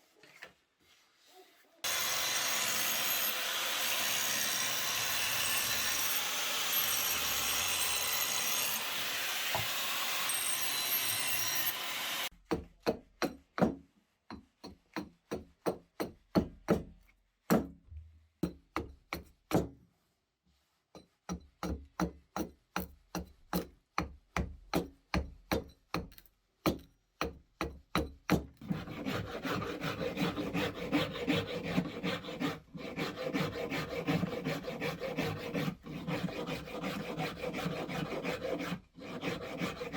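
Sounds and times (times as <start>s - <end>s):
tool scraping wood: 28.6s - 39.9s.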